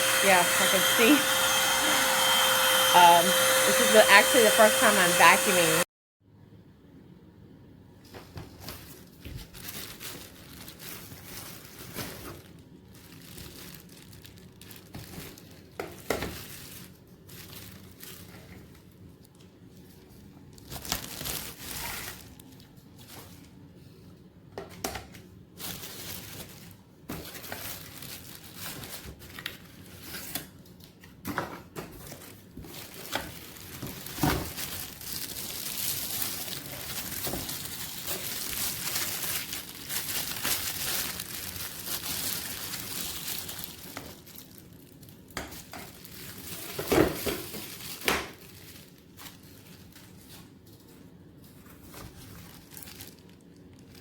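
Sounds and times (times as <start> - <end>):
stick vacuum running: 0.0 - 5.9.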